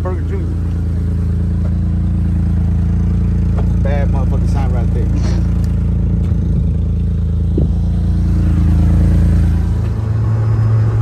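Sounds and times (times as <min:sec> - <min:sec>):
small truck engine under load: 0:00.0 - 0:11.0
short knock: 0:07.5 - 0:08.0.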